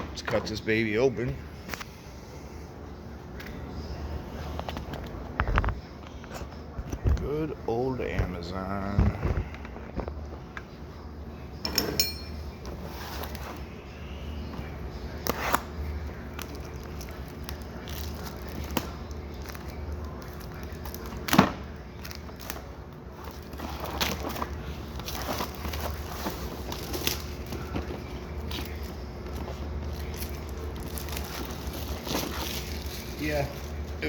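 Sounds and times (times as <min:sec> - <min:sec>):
packing material crinkling and tearing: 0:15.2 - 0:34.0.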